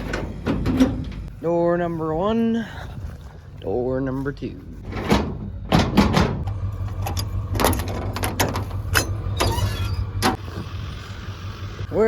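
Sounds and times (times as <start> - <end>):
low engine hum: 4.6 - 12.0
equipment clicks and knocks: 5.0 - 9.2.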